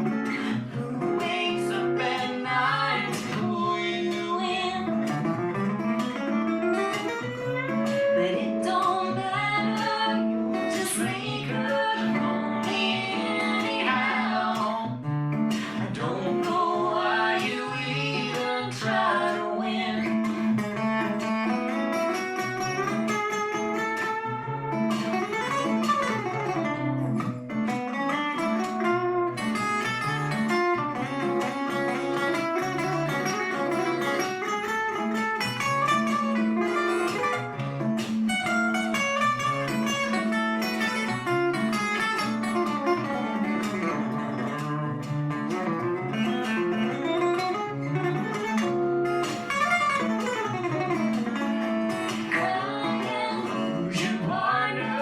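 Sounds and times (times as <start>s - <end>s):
plucked and strummed guitar: 0.0s - 55.0s.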